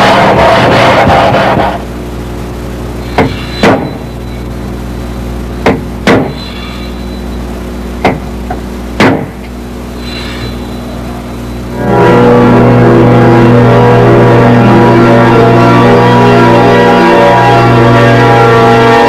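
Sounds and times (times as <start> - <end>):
steady low hum: 0.0 - 19.0
sharp knocks: 3.1 - 4.1, 5.6 - 6.5, 8.0 - 9.5.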